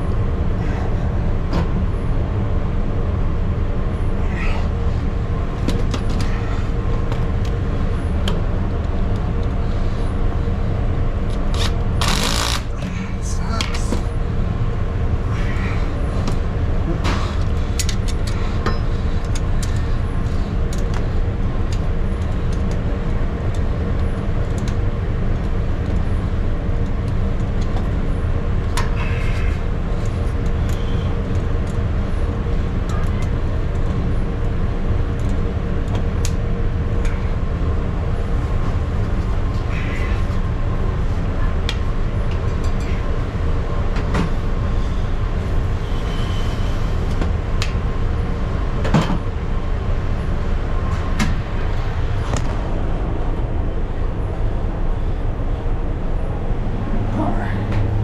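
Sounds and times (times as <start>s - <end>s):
drain snake motor drone: 11.4s - 13.6s.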